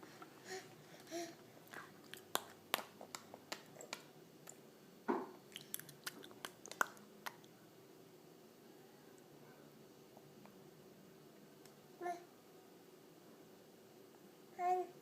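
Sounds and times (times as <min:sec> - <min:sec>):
baby lip-smacks and tongue clicks: 0:05.5 - 0:07.5.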